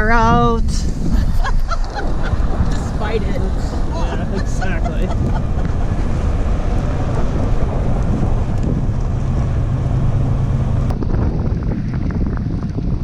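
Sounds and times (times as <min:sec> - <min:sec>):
steady low hum: 0:00.0 - 0:13.0
wind buffeting microphone: 0:00.0 - 0:13.0.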